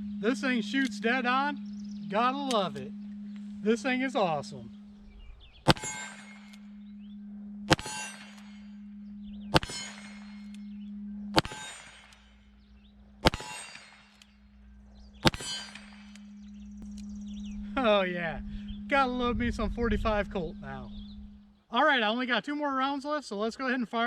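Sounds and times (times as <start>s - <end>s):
metallic ring: 2.1s - 17.5s
revolver shots: 5.6s - 6.6s, 7.7s - 8.7s, 9.5s - 10.6s, 11.3s - 12.3s, 13.2s - 14.2s, 15.1s - 16.3s.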